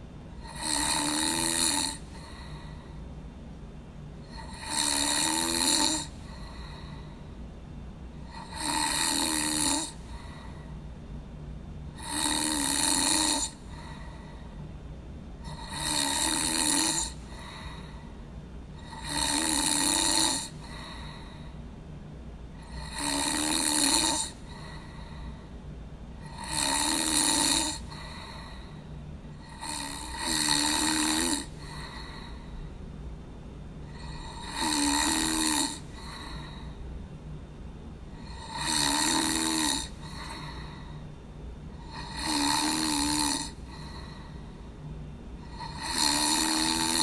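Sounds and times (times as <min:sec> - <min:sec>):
steady low hum: 0:00.0 - 0:47.0
person snoring: 0:00.4 - 0:02.9, 0:04.2 - 0:07.2, 0:08.2 - 0:10.7, 0:12.0 - 0:14.4, 0:15.4 - 0:18.0, 0:18.8 - 0:21.5, 0:22.6 - 0:25.4, 0:26.2 - 0:32.6, 0:33.9 - 0:36.8, 0:38.2 - 0:41.0, 0:41.7 - 0:44.5, 0:45.4 - 0:47.0.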